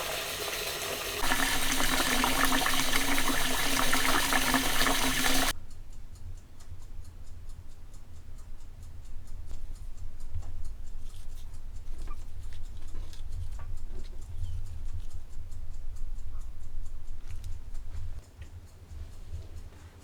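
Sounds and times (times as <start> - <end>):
water running from tap: 0.0 - 5.5
faint regular ticking: 0.2 - 20.0.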